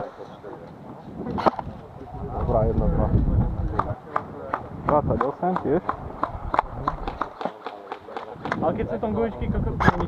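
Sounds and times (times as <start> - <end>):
voices in background: 0.0 - 10.0
sharp clicks or taps: 3.7 - 8.6.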